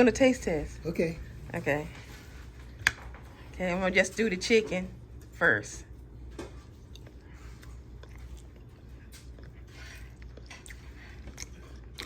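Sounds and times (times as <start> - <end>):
low steady hum: 0.0 - 12.0
person chewing food: 6.5 - 12.0.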